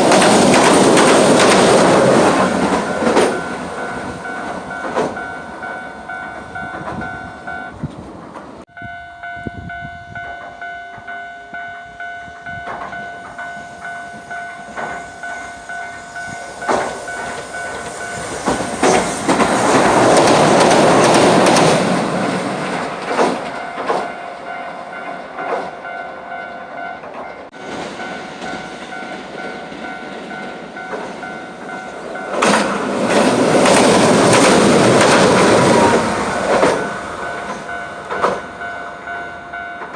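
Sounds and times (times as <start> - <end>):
clacks over rail joints: 0.0 - 5.3, 16.6 - 24.2, 25.2 - 25.8, 28.4 - 38.6
level crossing warning bell ringing: 0.0 - 7.8, 8.7 - 19.5, 23.5 - 39.9
train wheels on rails: 0.0 - 39.9.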